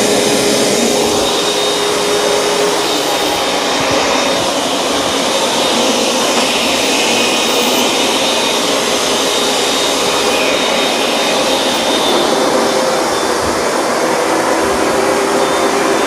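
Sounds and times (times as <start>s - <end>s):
carpet cleaner motor and suction: 0.0s - 16.0s
faint whining tones: 0.0s - 16.0s.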